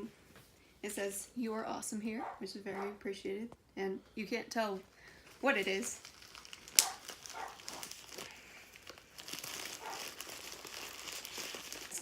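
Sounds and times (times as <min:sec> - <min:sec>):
packaging crinkling and rustling: 0:04.8 - 0:12.0.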